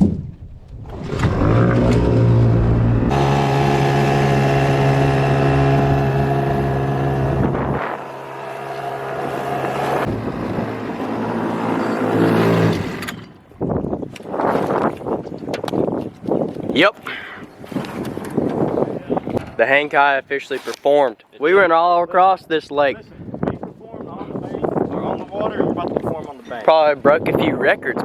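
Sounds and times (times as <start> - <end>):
outboard motor buzzing: 0.8 - 13.4.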